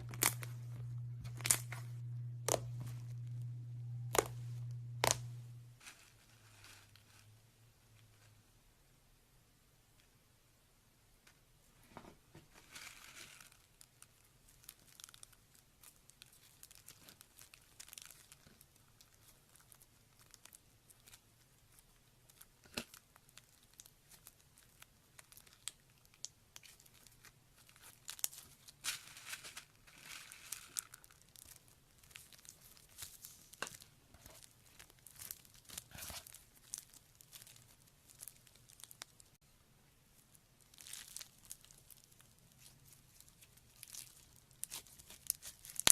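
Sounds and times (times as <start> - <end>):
slime snapping: 0.0 - 0.6, 4.1 - 4.4, 5.0 - 5.3
slime crackling and popping: 0.0 - 3.4, 4.0 - 6.0, 12.9 - 39.4, 40.2 - 45.9.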